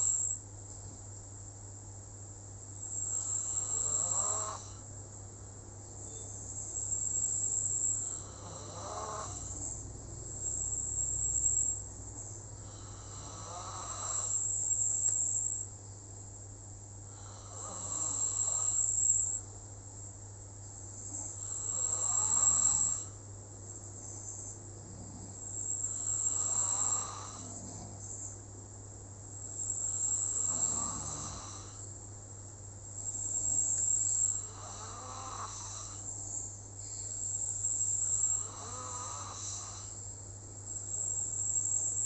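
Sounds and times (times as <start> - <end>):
rasping snoring: 3.0 - 4.8, 8.0 - 9.8, 12.6 - 14.4, 17.1 - 19.3, 21.1 - 23.2, 24.9 - 28.0, 29.7 - 31.8, 33.2 - 36.0, 36.9 - 40.0
faint high-pitched tone: 6.0 - 6.8.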